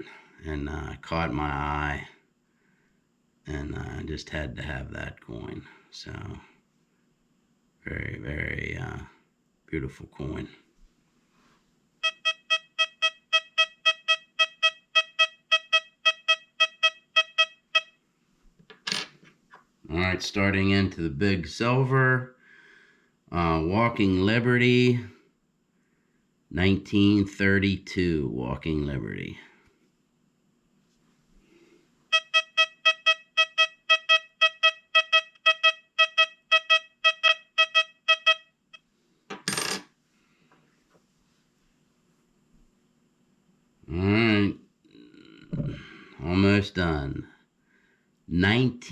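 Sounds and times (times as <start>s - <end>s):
metal detector short beeps: 12.0s - 17.9s, 32.1s - 38.5s.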